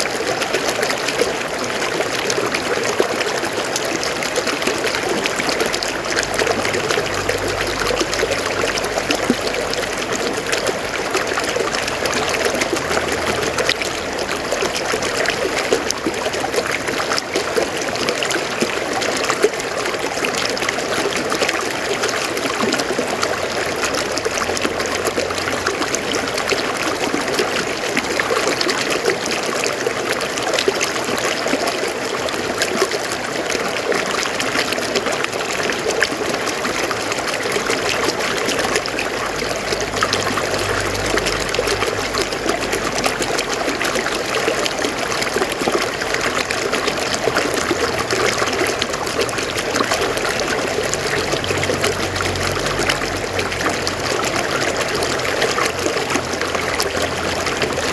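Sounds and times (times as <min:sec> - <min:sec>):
river flowing over rocks: 0:00.0 - 0:57.9.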